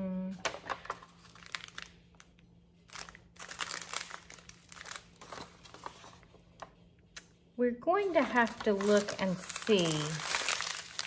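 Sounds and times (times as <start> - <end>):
plastic bags crinkling: 0.5 - 6.3, 7.9 - 11.0.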